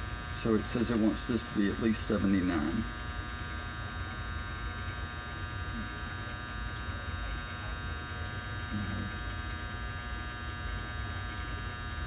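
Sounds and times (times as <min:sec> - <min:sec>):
steady electrical hum: 0:00.0 - 0:12.0.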